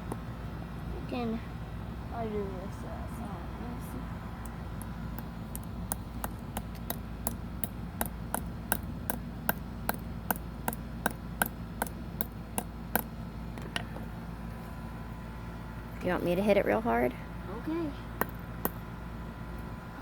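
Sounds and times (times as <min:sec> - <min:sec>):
hammer tapping on fidget spinner: 0:04.8 - 0:13.9.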